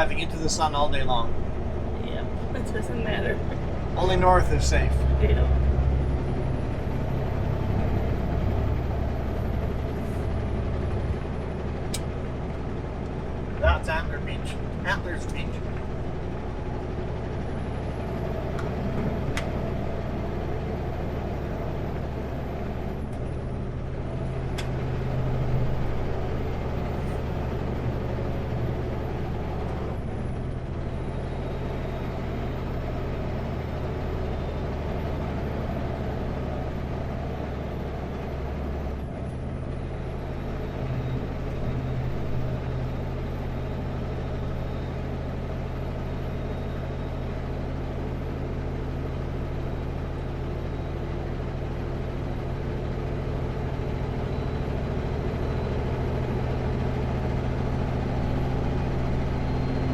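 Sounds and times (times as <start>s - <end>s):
truck diesel engine drone: 0.0s - 59.9s.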